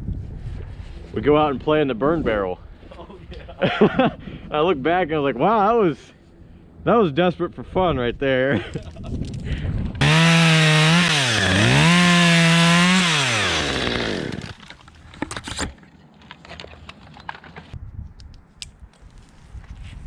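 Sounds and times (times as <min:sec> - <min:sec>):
chainsaw revving: 0:10.0 - 0:14.6.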